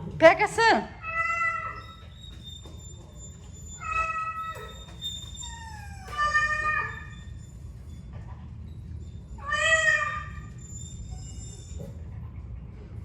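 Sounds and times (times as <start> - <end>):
cat meowing: 5.8 - 7.3, 9.4 - 10.6.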